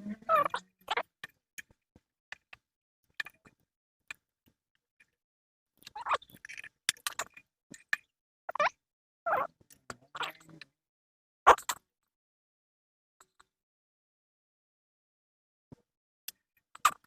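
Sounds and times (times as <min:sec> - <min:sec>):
small parts clicking and tapping: 0:01.0 - 0:05.2, 0:05.8 - 0:08.7.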